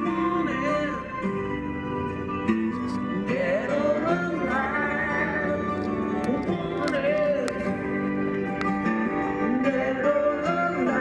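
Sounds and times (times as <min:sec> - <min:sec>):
person singing: 0:00.0 - 0:01.2, 0:03.1 - 0:08.0, 0:09.4 - 0:11.0
guitar-led song: 0:00.0 - 0:11.0.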